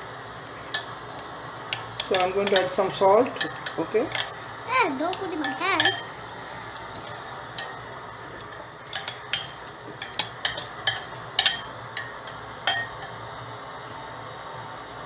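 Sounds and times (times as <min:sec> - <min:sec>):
utensils clinking against a bowl: 0:00.5 - 0:13.2.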